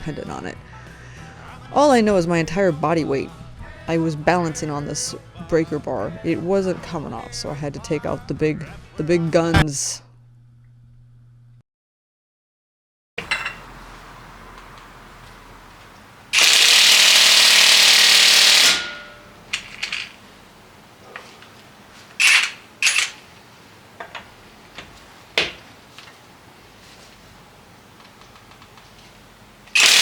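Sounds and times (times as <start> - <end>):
impact wrench hammering: 16.4 - 20.1, 22.2 - 23.1, 29.8 - 30.0
tools clicking and knocking: 19.5 - 20.2, 22.2 - 23.2.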